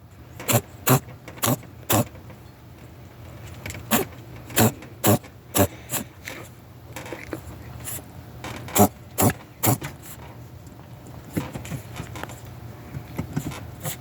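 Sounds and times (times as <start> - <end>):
rabbit sneezing: 0.4 - 2.1, 3.9 - 6.2, 8.8 - 9.9, 13.8 - 14.0.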